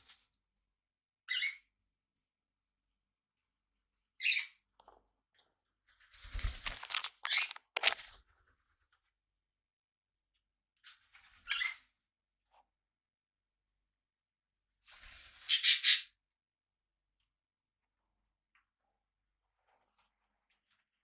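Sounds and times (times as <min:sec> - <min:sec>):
scuffling noise: 0:06.4 - 0:08.2.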